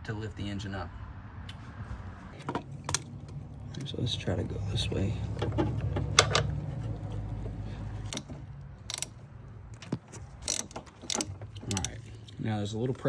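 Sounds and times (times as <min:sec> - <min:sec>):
metallic clicks and knocks: 0:02.4 - 0:03.9, 0:05.2 - 0:12.1
ratchet wrench rattling: 0:08.0 - 0:09.2, 0:09.8 - 0:12.2.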